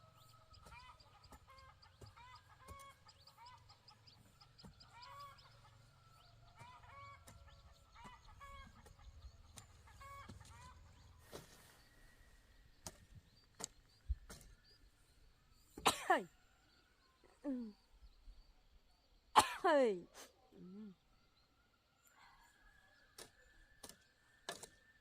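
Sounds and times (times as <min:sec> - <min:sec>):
chickens clucking: 0:00.2 - 0:11.8.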